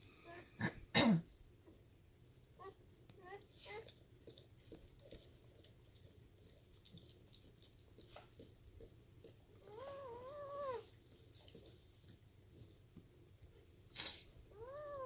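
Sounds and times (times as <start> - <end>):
puppy crying: 9.6 - 10.9, 14.5 - 15.0.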